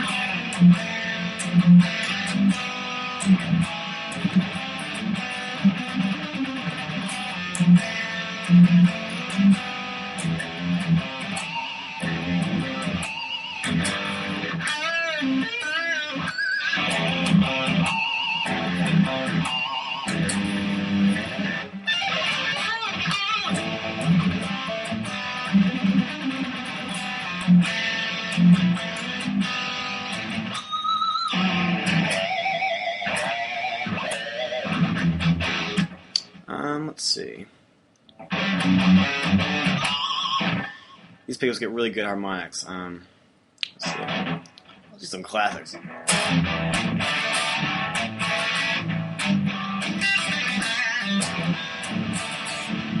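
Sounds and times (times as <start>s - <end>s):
electric guitar riffs: 0.0s - 36.9s, 38.1s - 41.9s, 43.6s - 53.0s.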